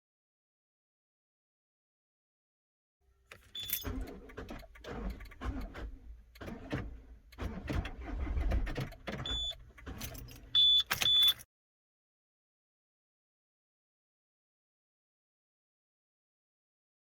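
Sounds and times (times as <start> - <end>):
diesel engine cranking: 3.3 - 11.4
keys jingling: 10.0 - 11.4
short high beeps: 10.6 - 11.4.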